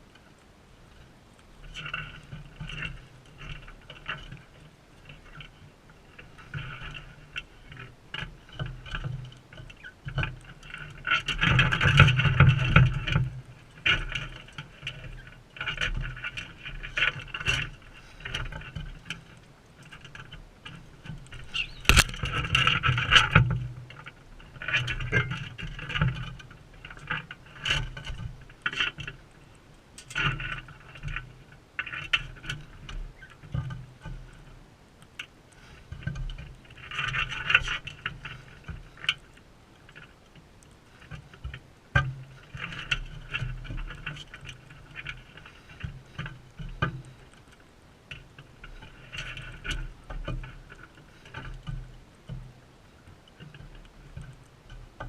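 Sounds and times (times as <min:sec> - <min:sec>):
parrot beaks scraping and tapping: 0:19.8 - 0:23.6.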